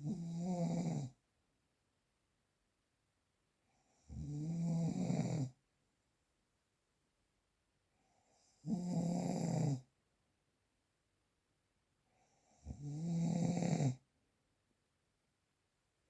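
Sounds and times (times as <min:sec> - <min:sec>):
rasping snores: 0:00.0 - 0:01.2, 0:03.9 - 0:05.6, 0:08.4 - 0:09.8, 0:12.4 - 0:14.0.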